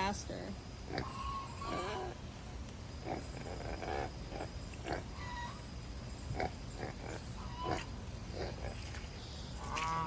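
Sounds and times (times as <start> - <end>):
pig grunting: 0.9 - 2.2, 3.0 - 5.5, 6.3 - 9.1.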